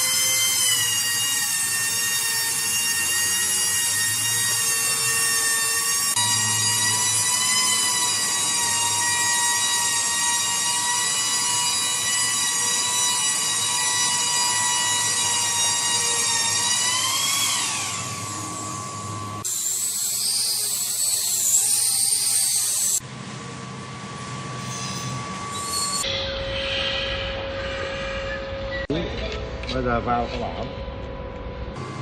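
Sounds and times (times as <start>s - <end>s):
power tool motor whining: 0.0s - 23.0s
wavering high-pitched tool whine: 0.0s - 32.0s.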